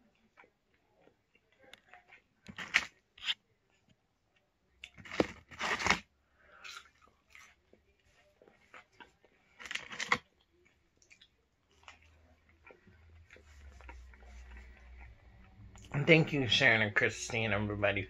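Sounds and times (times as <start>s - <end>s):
crunching bites of fried food: 0.2s - 3.3s, 4.8s - 15.2s.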